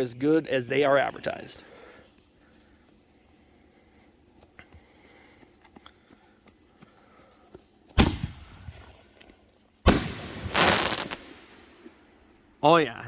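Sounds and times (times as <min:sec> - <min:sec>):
crickets chirping: 0:00.0 - 0:13.0
firework shell bang: 0:08.0 - 0:08.9, 0:09.9 - 0:11.9.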